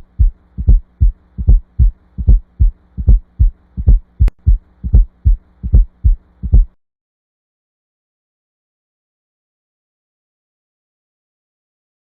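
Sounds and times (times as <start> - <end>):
faint steady hum: 0.0 - 6.8
heartbeat thuds: 0.0 - 6.8.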